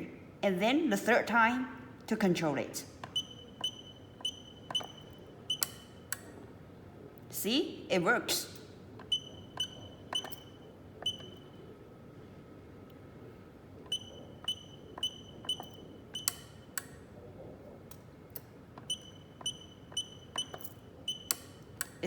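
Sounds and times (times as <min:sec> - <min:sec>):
keypad clicks with beeps: 0:03.0 - 0:06.3, 0:09.0 - 0:11.7, 0:13.9 - 0:17.0, 0:18.4 - 0:22.0.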